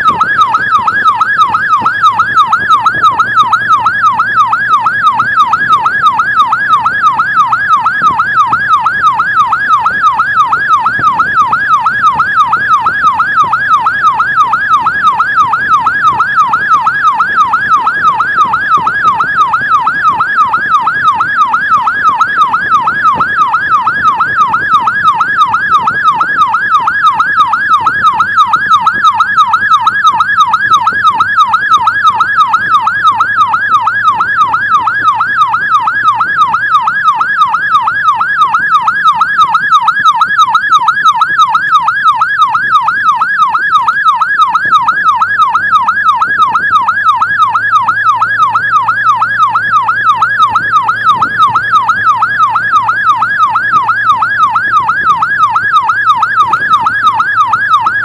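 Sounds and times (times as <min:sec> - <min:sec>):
low vehicle hum: 0:00.0 - 0:58.0
siren on fast yelp: 0:00.0 - 0:58.0.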